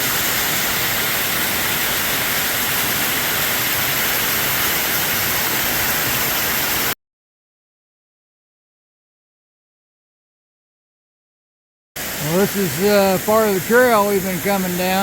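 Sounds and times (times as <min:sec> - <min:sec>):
waterfall rushing: 0:00.0 - 0:07.0, 0:12.0 - 0:15.0.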